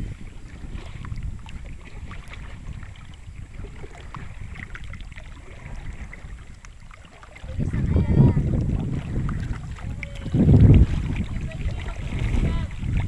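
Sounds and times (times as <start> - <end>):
water lapping around boat: 0.0 - 13.0
wind rumbling on microphone: 0.0 - 13.0
small ticks and drips: 3.9 - 11.9.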